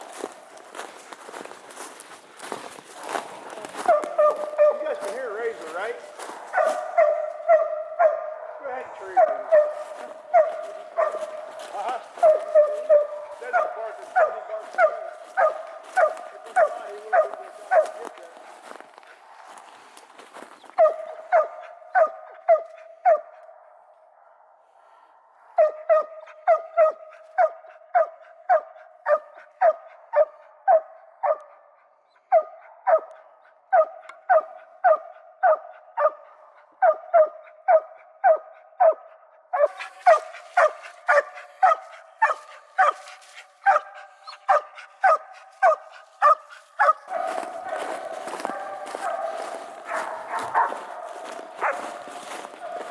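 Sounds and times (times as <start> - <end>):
dog barking: 0.0 - 52.9.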